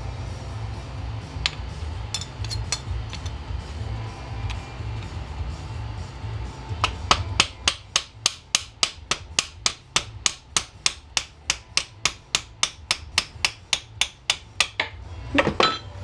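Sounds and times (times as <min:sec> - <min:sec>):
metal hammer tapping: 0:06.8 - 0:15.9.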